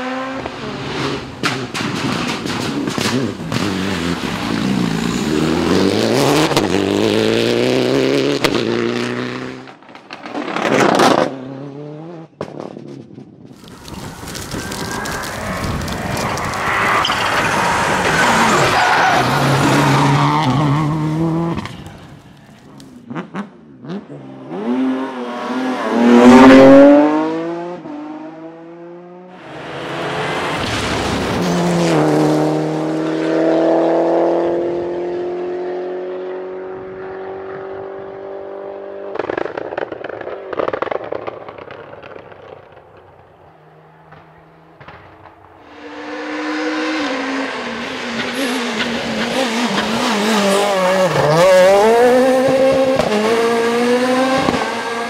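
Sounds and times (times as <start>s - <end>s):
rally car engines revving: 0.0s - 13.0s, 13.6s - 22.2s, 22.8s - 41.7s, 45.7s - 55.0s
exhaust pops and crackles: 1.4s - 4.5s, 9.8s - 11.2s, 12.4s - 18.8s, 39.1s - 45.6s.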